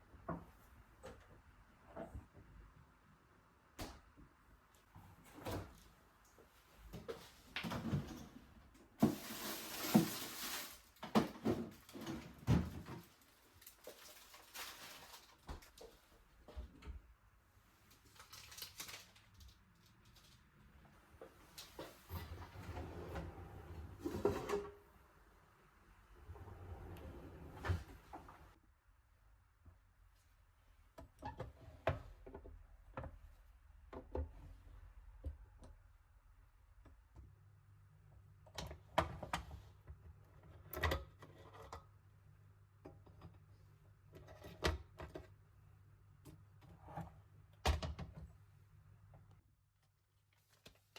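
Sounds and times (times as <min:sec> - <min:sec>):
rustling: 0:09.1 - 0:11.0, 0:13.0 - 0:16.0.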